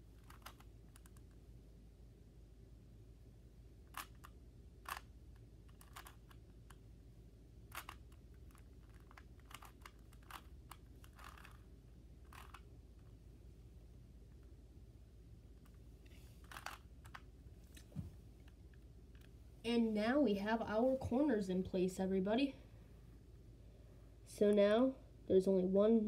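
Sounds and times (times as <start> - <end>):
puzzle cube plastic clicks: 0.2 - 1.4, 3.9 - 6.8, 7.7 - 13.1, 16.4 - 17.3.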